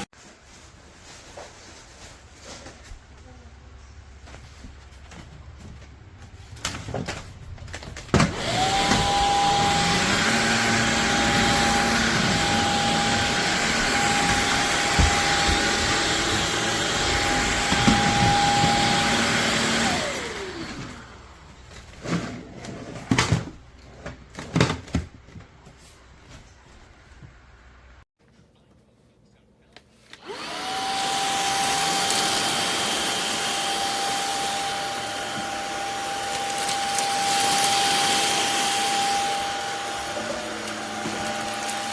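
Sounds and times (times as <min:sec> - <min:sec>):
stick vacuum motor whine: 0:08.1 - 0:21.5, 0:30.1 - 0:41.9.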